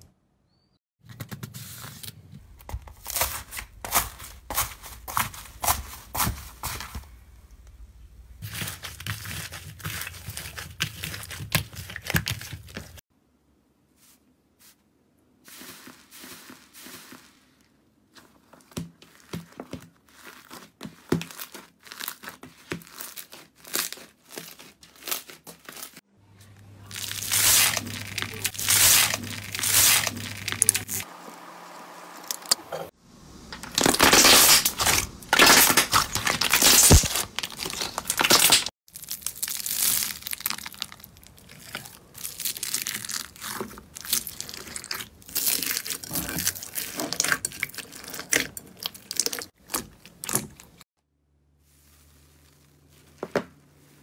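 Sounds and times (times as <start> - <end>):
hands squishing crackling slime: 8.4 - 13.0, 18.2 - 26.0, 26.8 - 31.0, 33.7 - 50.8.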